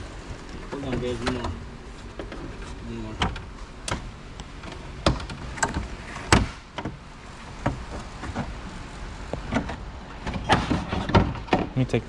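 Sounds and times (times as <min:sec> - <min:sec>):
trim panels clicking and knocking: 0:03.2 - 0:07.0, 0:09.4 - 0:11.8.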